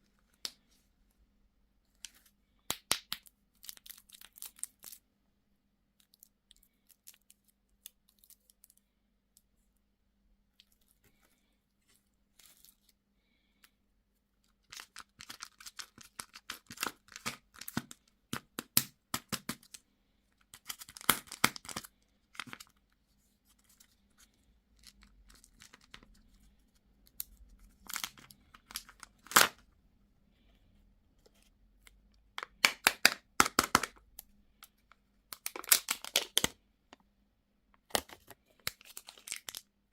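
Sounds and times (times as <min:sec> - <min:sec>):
packaging tearing and crackling: 0:35.4 - 0:36.5, 0:38.7 - 0:39.6.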